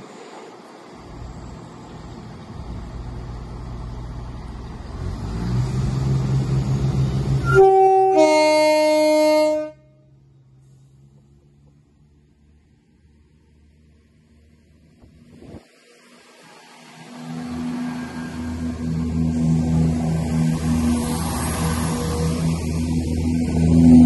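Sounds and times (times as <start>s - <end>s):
train running noise: 0.0s - 24.0s
two-tone train horn: 7.4s - 10.2s.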